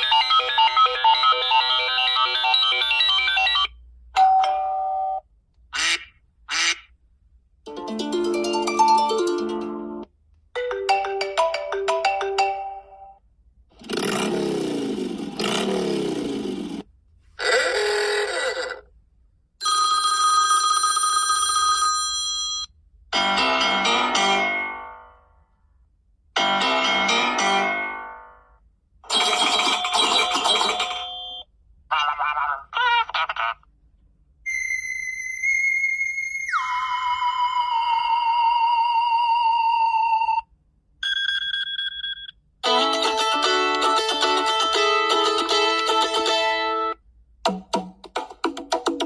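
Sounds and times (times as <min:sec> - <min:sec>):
melodic ringtone loop: 0:00.0 - 0:03.7, 0:07.7 - 0:10.0, 0:10.6 - 0:13.2, 0:29.1 - 0:31.4
low-pitched melodic ringtone: 0:10.6 - 0:13.2.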